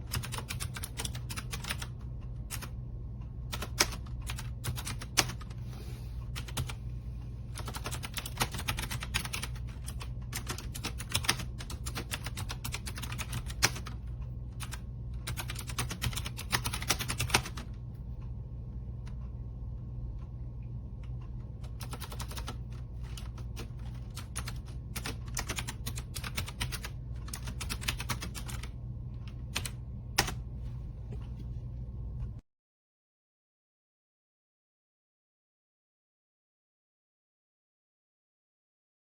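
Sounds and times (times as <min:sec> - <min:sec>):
clicky mechanical keyboard typing: 0:00.0 - 0:02.8, 0:03.5 - 0:05.6, 0:06.3 - 0:06.8, 0:07.5 - 0:17.9, 0:21.0 - 0:30.5
steady low hum: 0:00.0 - 0:32.4.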